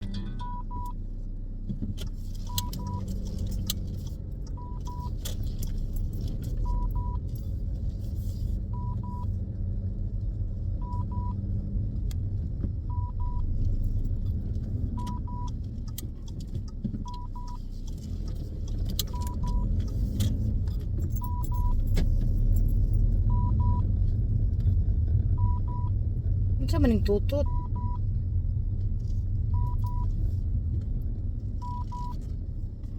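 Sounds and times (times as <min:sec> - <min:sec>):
car engine rumble: 0:00.0 - 0:32.9
dashcam double beeps: 0:00.4 - 0:01.0, 0:02.5 - 0:03.1, 0:04.5 - 0:05.2, 0:06.6 - 0:07.2, 0:10.8 - 0:11.4, 0:14.9 - 0:15.6, 0:17.0 - 0:17.6, 0:19.1 - 0:19.8, 0:21.2 - 0:21.8, 0:23.3 - 0:23.8, 0:25.4 - 0:25.9, 0:27.3 - 0:28.0, 0:29.5 - 0:30.1, 0:31.6 - 0:32.2.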